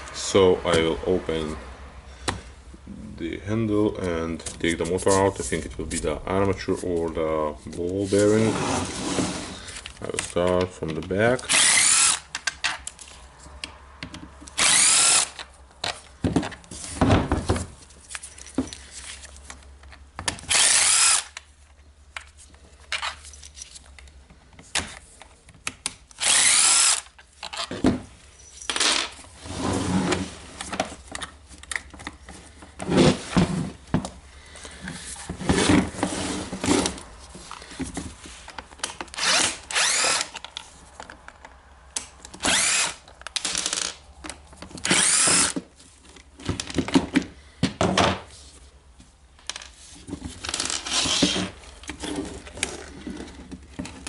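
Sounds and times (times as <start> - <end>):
power screwdriver bursts: 11.5 - 12.3, 14.5 - 15.5, 20.5 - 21.4, 26.2 - 27.1, 39.2 - 40.4, 42.4 - 44.0, 44.8 - 45.6.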